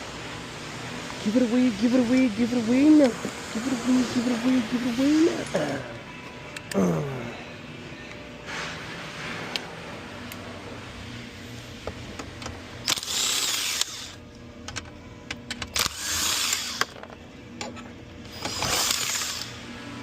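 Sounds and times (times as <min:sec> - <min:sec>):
power tool bursts on fastener: 0:12.8 - 0:14.2, 0:15.7 - 0:16.9, 0:18.3 - 0:19.6.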